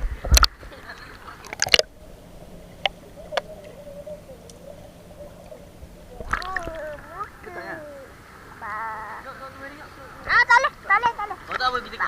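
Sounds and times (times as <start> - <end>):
sharp underwater clicks: 0.2 - 2.0, 2.8 - 3.8, 4.4 - 4.8
underwater knocks or splashes: 1.4 - 1.9
faint wavering tone: 1.8 - 8.2.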